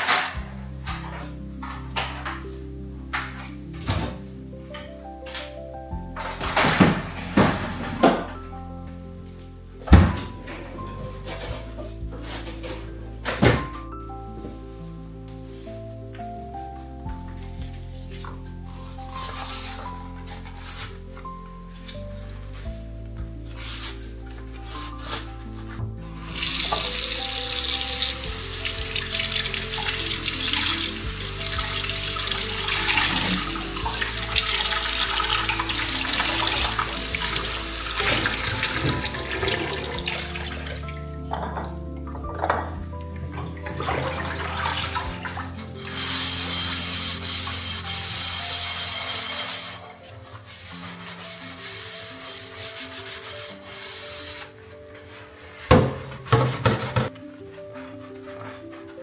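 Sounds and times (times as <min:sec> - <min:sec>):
soft background music: 0:00.0 - 0:59.0
hand scrubbing surface: 0:23.5 - 0:41.5, 0:43.0 - 0:55.6
tap water running into sink: 0:26.2 - 0:46.6.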